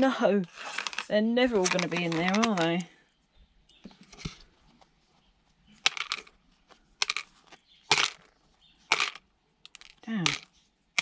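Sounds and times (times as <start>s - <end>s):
small hard pieces clattering: 0.5s - 2.9s, 5.8s - 6.4s, 7.0s - 10.5s.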